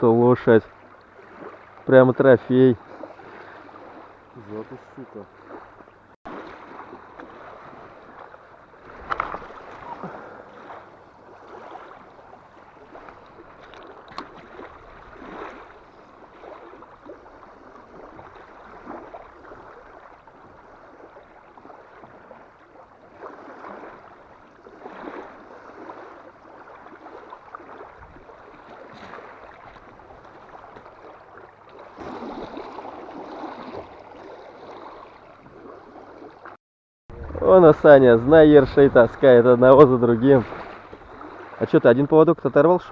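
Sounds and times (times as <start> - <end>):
water splashing at shoreline: 0.0 - 42.9
strong wind: 37.1 - 41.9.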